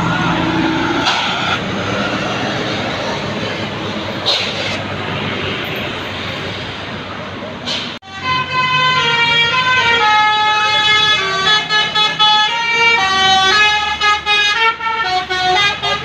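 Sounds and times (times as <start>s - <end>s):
bus musical horn playing tune: 8.0s - 16.0s.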